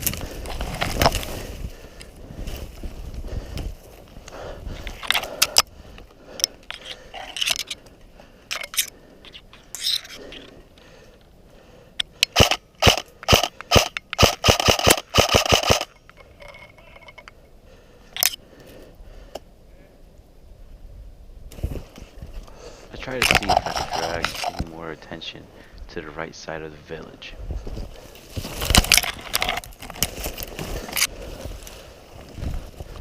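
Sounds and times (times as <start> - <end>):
brush scraping: 23.0 - 24.9
footsteps crunching in snow: 27.5 - 28.9.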